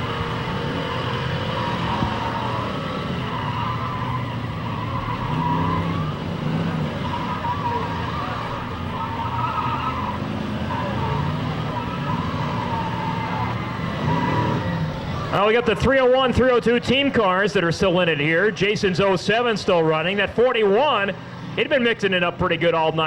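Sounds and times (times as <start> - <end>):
arena background noise: 0.0 - 23.0
car engines revving: 0.0 - 23.0.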